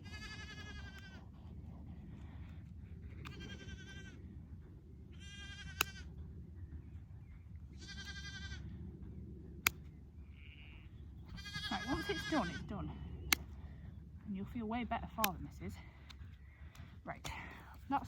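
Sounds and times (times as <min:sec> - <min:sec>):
sheep bleating: 0:00.0 - 0:01.2, 0:03.2 - 0:04.2, 0:05.1 - 0:06.0, 0:07.8 - 0:08.6, 0:10.4 - 0:12.7.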